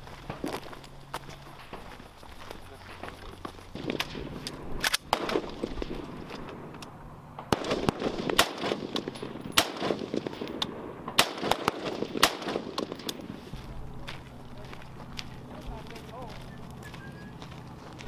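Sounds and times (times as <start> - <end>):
rifle shots: 3.7 - 6.8, 7.4 - 13.4.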